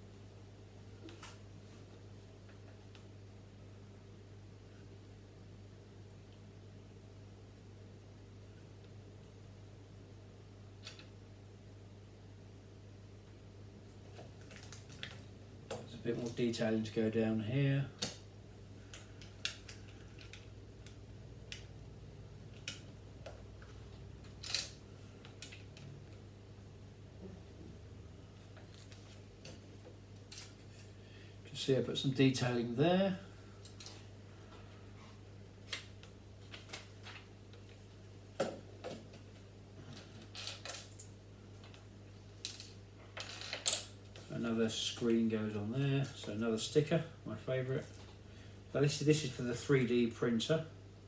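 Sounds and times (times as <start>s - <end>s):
faint steady hum: 0.0s - 51.0s.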